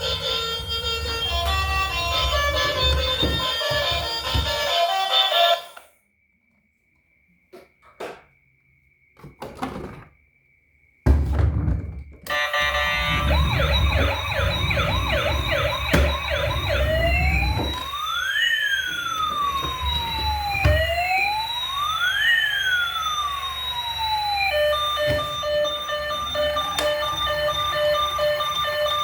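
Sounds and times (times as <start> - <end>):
toy electronic siren: 0.0 - 5.9, 12.3 - 29.0.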